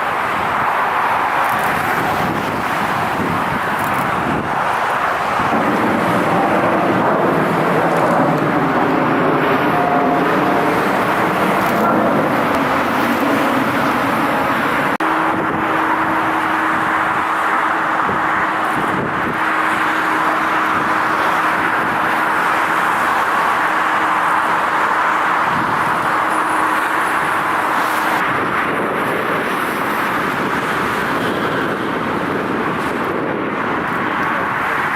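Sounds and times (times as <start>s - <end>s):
jet engine rushing: 0.0s - 34.9s.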